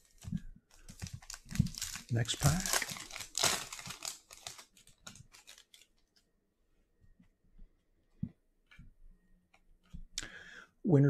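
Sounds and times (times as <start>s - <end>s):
card pack wrapper ripping: 0.0s - 6.1s
rustling of wrapper and cards: 0.0s - 6.3s.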